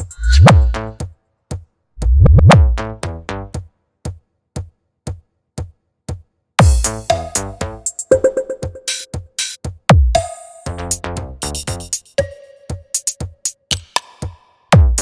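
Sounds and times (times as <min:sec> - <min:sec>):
drum machine clicks: 0:00.0 - 0:15.0
booming bass hits: 0:00.2 - 0:01.0, 0:02.0 - 0:03.2.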